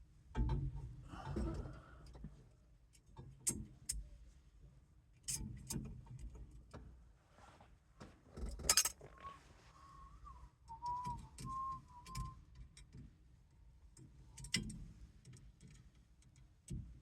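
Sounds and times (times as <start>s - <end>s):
metal parts rattling: 8.6s - 9.0s
small metal parts clicking: 8.6s - 9.0s.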